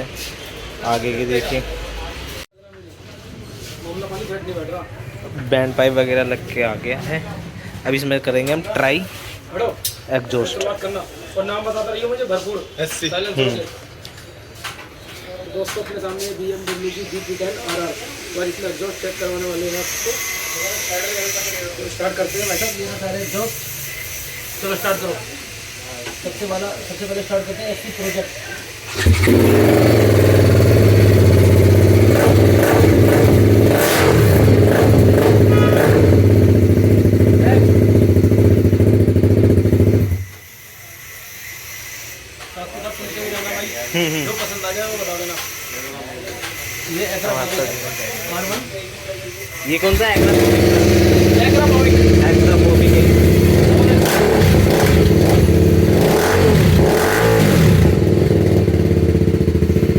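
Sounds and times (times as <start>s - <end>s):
motorcycle engine idling: 28.9s - 40.3s, 50.2s - 59.9s.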